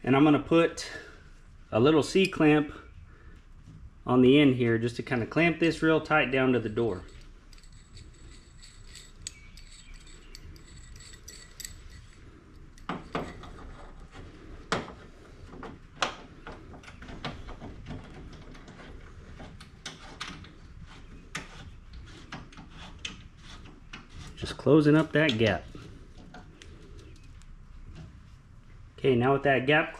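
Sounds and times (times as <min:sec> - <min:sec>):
metallic clinks and knocks: 0:06.6 - 0:13.8.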